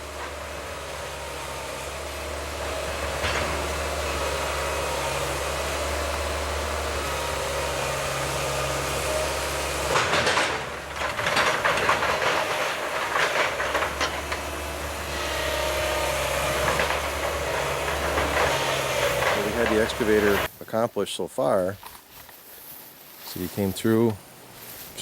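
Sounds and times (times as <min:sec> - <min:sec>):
excavator diesel engine running: 0:00.0 - 0:20.5
loud clattering and cracking: 0:02.7 - 0:04.9, 0:09.5 - 0:20.5.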